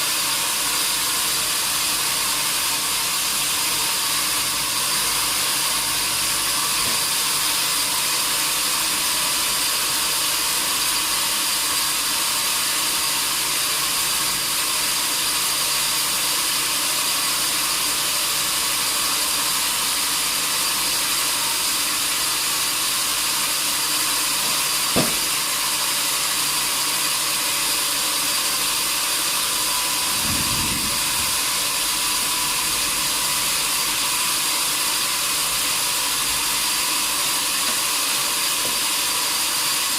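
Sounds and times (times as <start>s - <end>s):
sawmill saw running: 0.0s - 39.9s
short low thump: 30.0s - 31.9s.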